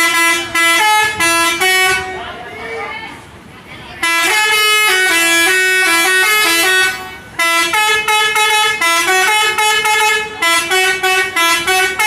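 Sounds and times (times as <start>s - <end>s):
musical air horn playing a tune: 4.0s - 12.0s.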